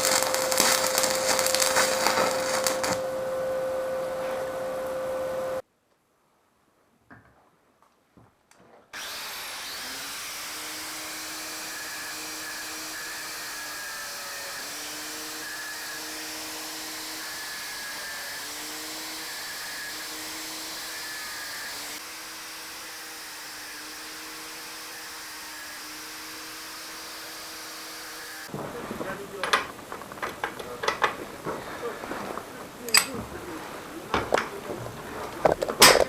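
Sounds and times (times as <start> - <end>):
angle grinder cutting metal: 0.0 - 5.6, 9.0 - 28.5.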